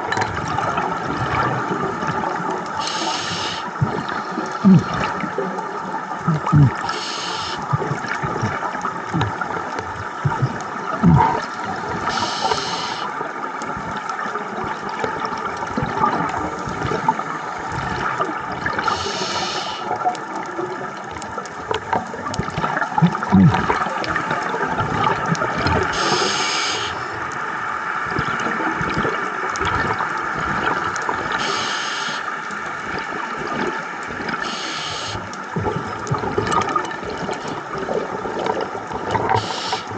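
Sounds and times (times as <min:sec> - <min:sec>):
bubbling exhaled air: 0:00.0 - 0:13.2, 0:14.8 - 0:20.1, 0:22.3 - 0:27.3, 0:32.9 - 0:39.9
steady underwater rush: 0:00.0 - 0:39.9
regulator breath hiss: 0:02.8 - 0:04.4, 0:06.5 - 0:07.7, 0:12.1 - 0:13.1, 0:18.8 - 0:19.9, 0:25.9 - 0:27.1, 0:31.4 - 0:32.3, 0:34.4 - 0:35.3, 0:39.4 - 0:39.9.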